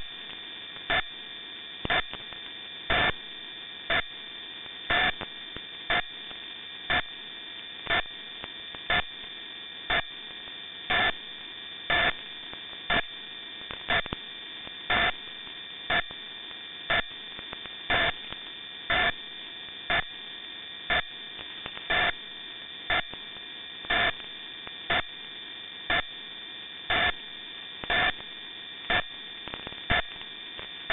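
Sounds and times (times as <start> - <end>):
radio static hiss: 0.0 - 30.9
pulses of radio noise: 4.9 - 5.3.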